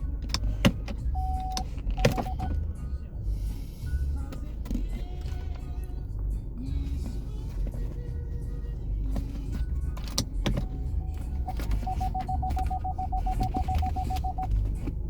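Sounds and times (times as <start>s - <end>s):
steady low rumble: 0.0s - 15.0s
car warning chime beeping: 1.1s - 2.7s, 11.3s - 14.6s
clicks: 11.5s - 14.7s.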